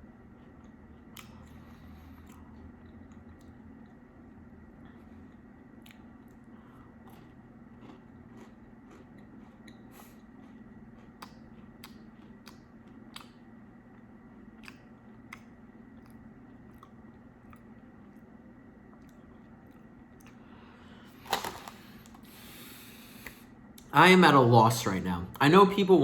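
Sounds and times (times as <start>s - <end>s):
steady low hum: 0.0s - 26.0s
faint chewing clicks: 0.2s - 20.4s.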